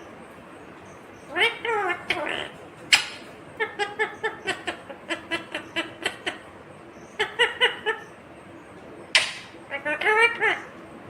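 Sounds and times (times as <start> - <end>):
parakeet chattering calls: 1.1 - 8.2, 9.1 - 10.7.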